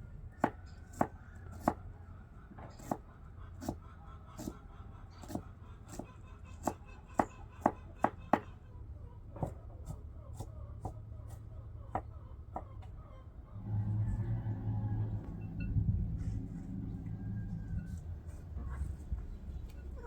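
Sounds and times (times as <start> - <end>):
low steady hum: 13.6 - 20.0.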